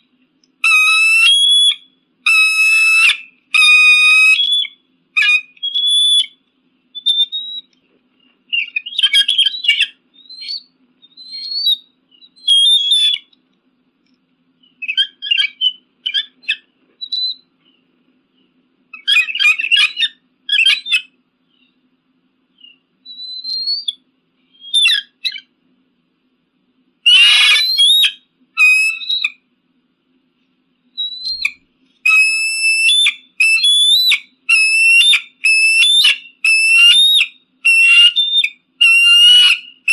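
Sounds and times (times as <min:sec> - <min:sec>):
eagle calling: 0:00.6 - 0:06.4, 0:08.5 - 0:13.4, 0:14.6 - 0:17.5, 0:18.9 - 0:21.7, 0:22.6 - 0:25.5, 0:27.1 - 0:29.4, 0:31.0 - 0:39.9.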